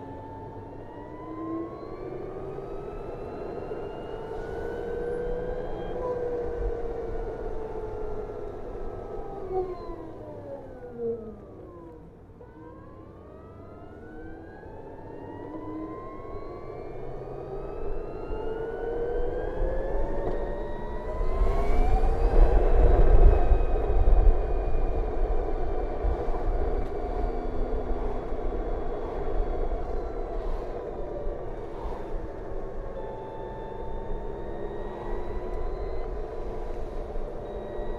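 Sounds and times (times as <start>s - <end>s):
electric scooter motor whining: 0.0s - 37.9s
road rumble: 0.0s - 37.9s
wind noise: 17.3s - 37.9s.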